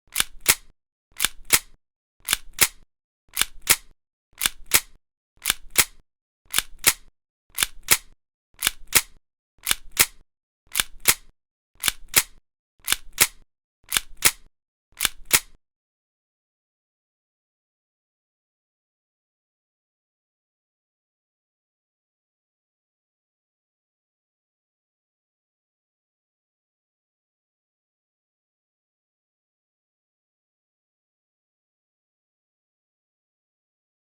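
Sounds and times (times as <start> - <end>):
gun being cocked: 0.1 - 2.8, 3.4 - 15.6.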